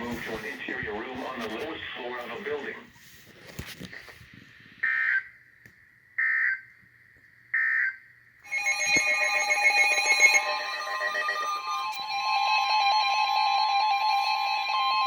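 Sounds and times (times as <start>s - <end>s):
weather radio alarms beeping: 8.4s - 15.0s.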